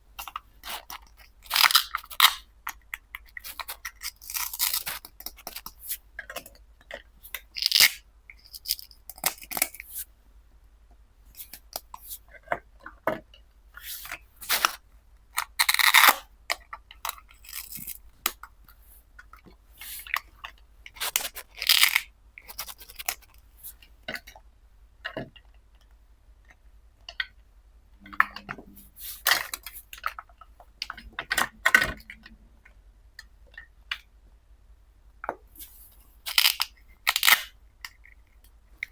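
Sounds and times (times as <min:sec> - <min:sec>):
rustling or tearing noises: 0:20.9 - 0:23.8, 0:35.6 - 0:37.5
plastic toy pieces clicking: 0:36.3 - 0:38.0.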